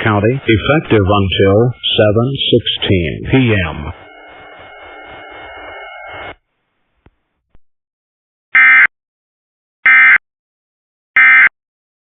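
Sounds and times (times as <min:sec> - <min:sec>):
screeching digital tone bursts: 0:00.1 - 0:06.4.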